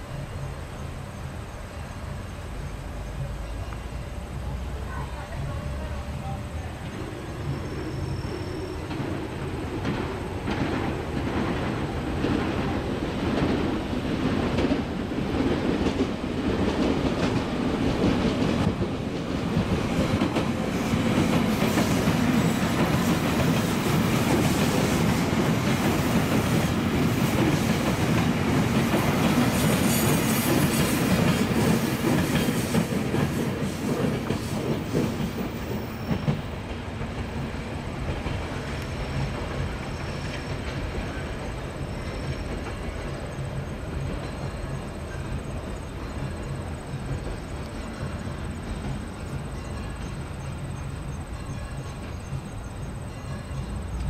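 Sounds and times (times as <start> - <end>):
train wheels clattering on rails: 2.2 - 54.0.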